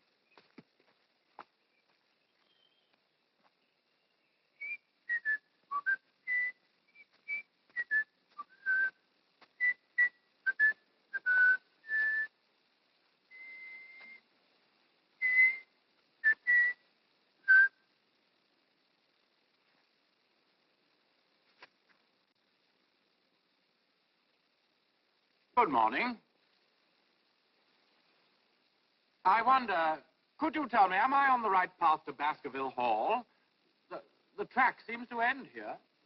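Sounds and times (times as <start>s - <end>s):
person whistling a tune: 16.2s - 16.8s, 17.5s - 17.8s.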